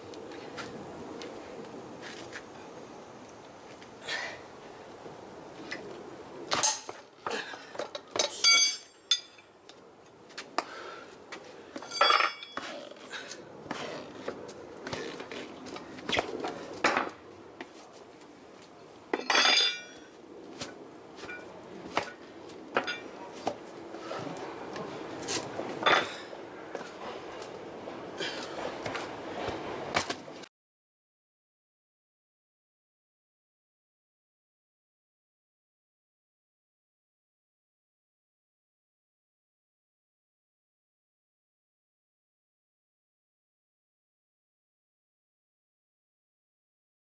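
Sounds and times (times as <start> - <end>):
metal hand tools clinking: 7.9 - 9.5, 11.8 - 12.6, 19.2 - 20.1.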